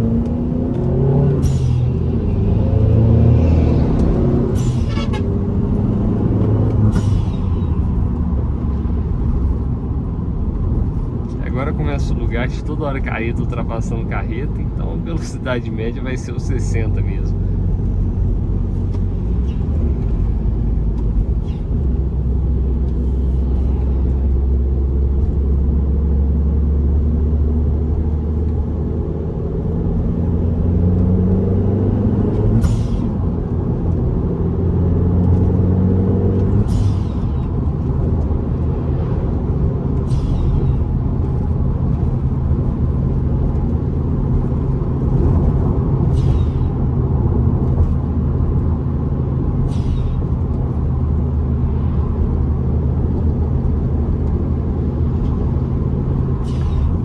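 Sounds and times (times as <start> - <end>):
car engine while driving: 0.0 - 57.0
road noise: 0.0 - 57.0
short hisses: 46.0 - 46.8, 49.6 - 50.2.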